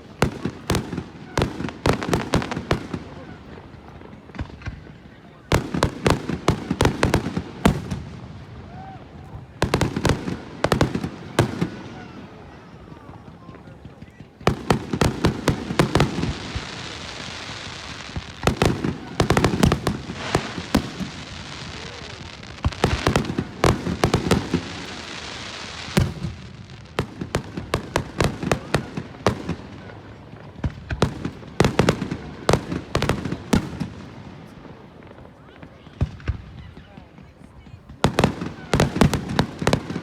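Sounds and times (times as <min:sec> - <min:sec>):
fireworks bangs: 0:00.0 - 0:40.0
fireworks hiss: 0:14.8 - 0:28.8.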